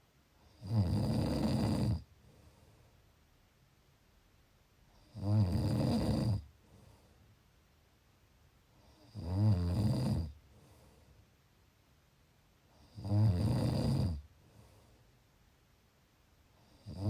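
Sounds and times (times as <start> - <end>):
person snoring: 0.5 - 2.1, 5.1 - 6.4, 9.0 - 10.4, 12.8 - 14.2, 16.7 - 17.0.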